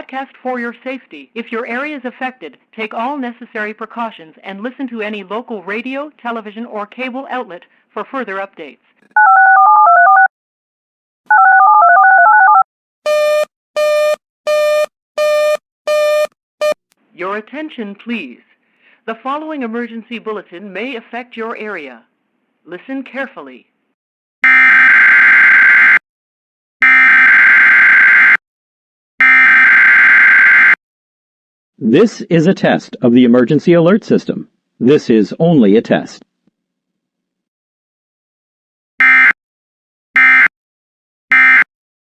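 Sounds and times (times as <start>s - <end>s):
touch-tone digits: 11.3s - 16.8s.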